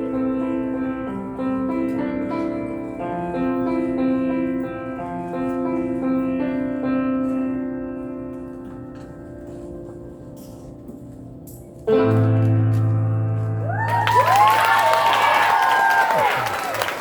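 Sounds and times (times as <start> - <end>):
solo piano chords: 0.0 - 14.0.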